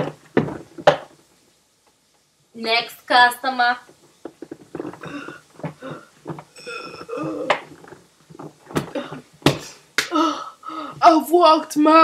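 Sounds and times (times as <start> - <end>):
sharp knocks: 0.0 - 1.2.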